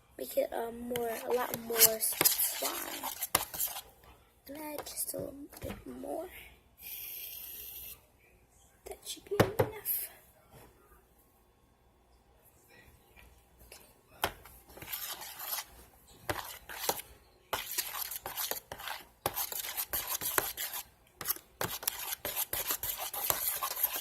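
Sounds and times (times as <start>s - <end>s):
fork scraping inside a container: 14.8s - 15.7s, 17.6s - 24.0s.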